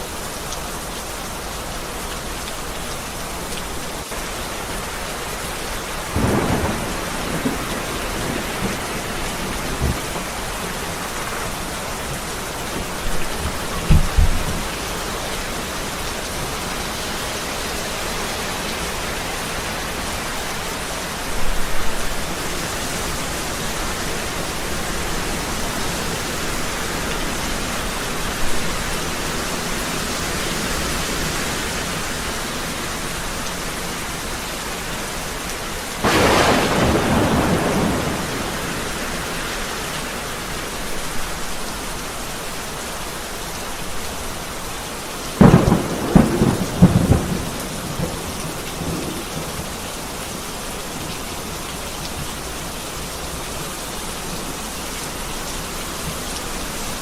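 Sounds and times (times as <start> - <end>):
heavy rain falling: 0.0 - 57.0
thunder rumbling: 6.1 - 11.4, 36.0 - 39.6, 45.4 - 49.6
sharp thunder cracks: 36.0 - 39.2, 45.4 - 49.2.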